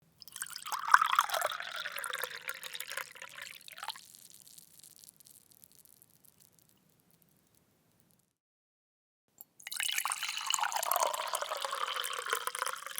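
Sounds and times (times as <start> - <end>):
water poured into a glass: 0.2 - 5.1, 9.6 - 12.9
water dripping: 0.2 - 6.9.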